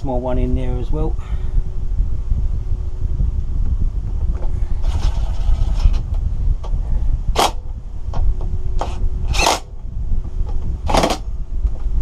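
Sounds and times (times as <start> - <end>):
steady low rumble: 0.0 - 12.0
metal parts and tool scraping: 4.8 - 6.0.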